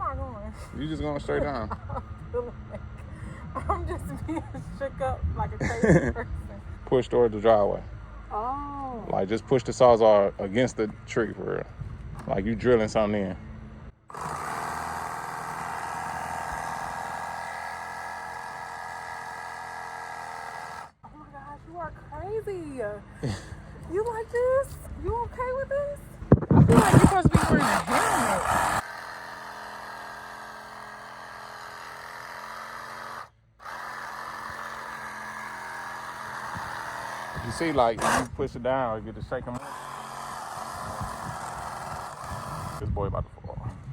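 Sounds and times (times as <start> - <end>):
reciprocating saw cutting wood: 13.9 - 21.0, 26.5 - 38.4, 39.4 - 42.8.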